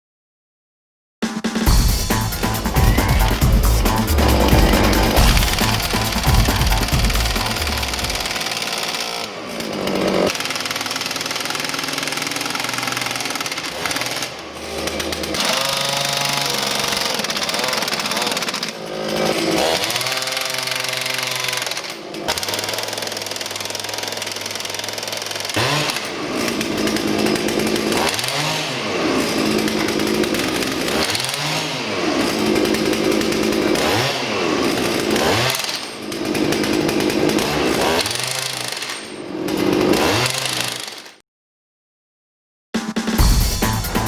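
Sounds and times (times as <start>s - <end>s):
petrol engine revving: 1.6s - 10.5s
impact wrench hammering rattle: 1.6s - 41.2s.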